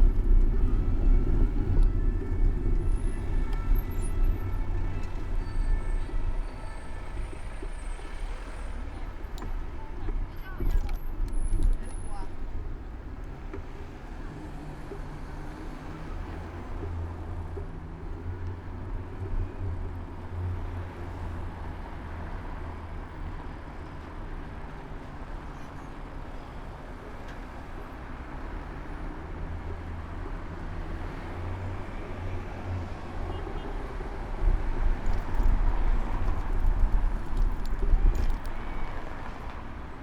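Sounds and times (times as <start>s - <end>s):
deep rumble: 0.0s - 8.3s
car and bus engines: 0.0s - 40.0s.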